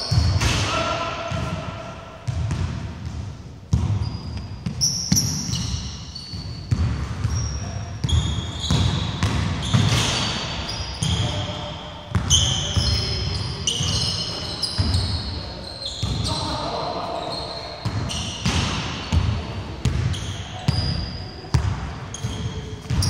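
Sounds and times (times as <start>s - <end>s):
sneakers squeaking: 0.0s - 23.0s
basketball bouncing: 2.3s - 5.5s, 8.1s - 10.1s, 17.8s - 20.1s, 21.5s - 23.0s.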